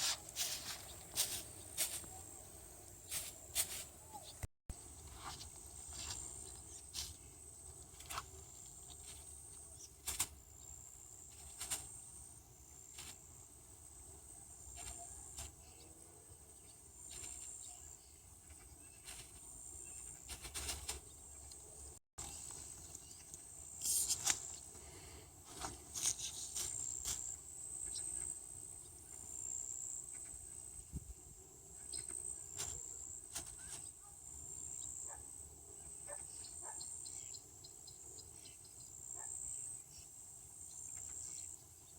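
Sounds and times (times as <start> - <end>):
insects trilling: 5.2 - 21.4, 26.0 - 30.9.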